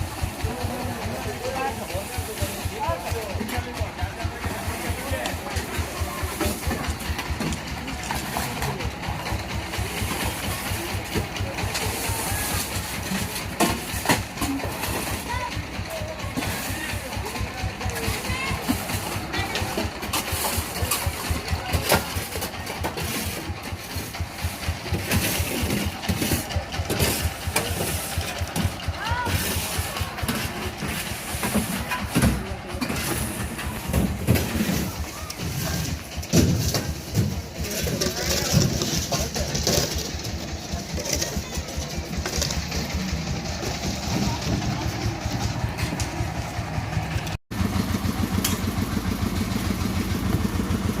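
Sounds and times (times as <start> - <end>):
construction machine engine throbbing: 0.0 - 51.0.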